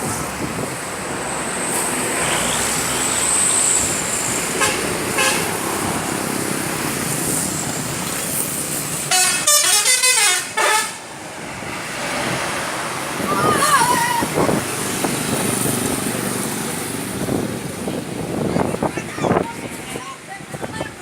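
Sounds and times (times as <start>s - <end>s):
bus passing: 0.0s - 21.0s
road traffic: 0.0s - 21.0s
musical bus horn tune: 4.6s - 5.6s, 9.1s - 11.1s
short horn toots: 9.1s - 11.0s.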